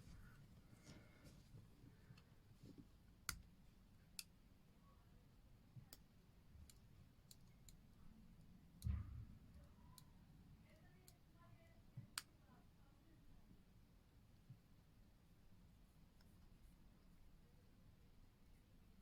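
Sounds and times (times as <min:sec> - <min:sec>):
small clicks and taps of tools: 0:05.8 - 0:10.1.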